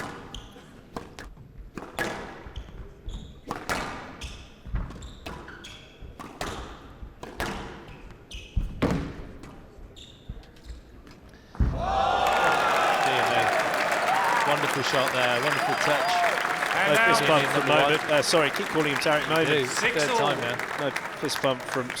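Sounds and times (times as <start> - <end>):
court shoes squeaking: 4.2 - 6.6, 7.9 - 8.8, 10.0 - 10.9.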